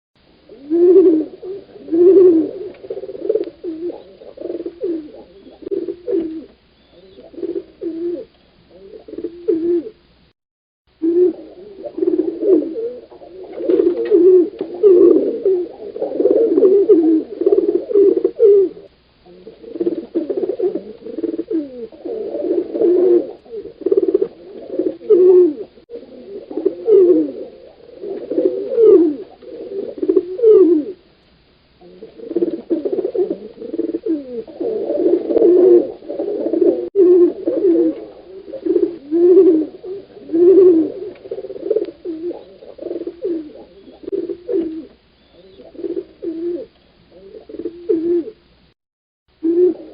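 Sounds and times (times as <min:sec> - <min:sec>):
pigeons cooing: 0:00.3 - 0:10.1, 0:11.0 - 0:31.2, 0:31.8 - 0:48.5, 0:49.4 - 0:49.9.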